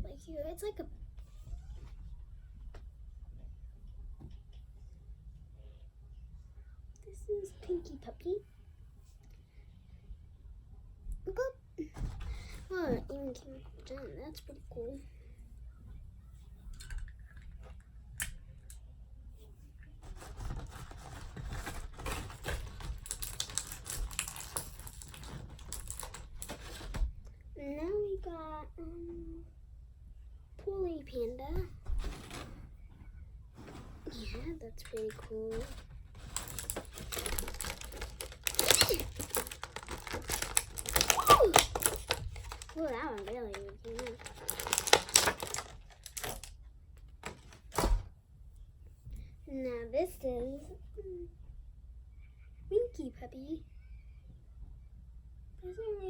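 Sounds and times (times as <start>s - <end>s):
plastic packaging crackling and clicking: 20.1s - 27.0s, 34.8s - 48.0s.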